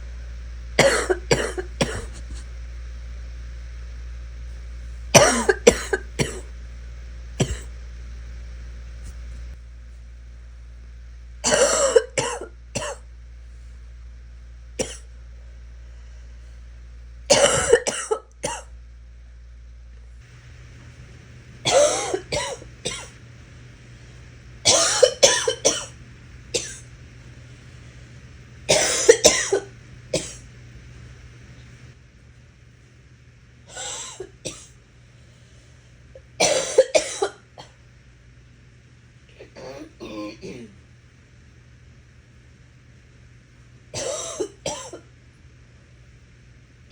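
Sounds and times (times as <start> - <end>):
person gagging cough: 0.8 - 2.2, 5.2 - 6.5, 7.4 - 7.7, 11.4 - 13.0, 17.3 - 18.7, 21.7 - 23.1, 24.7 - 25.9, 28.7 - 30.4, 36.4 - 37.4, 39.4 - 40.7, 44.0 - 45.0.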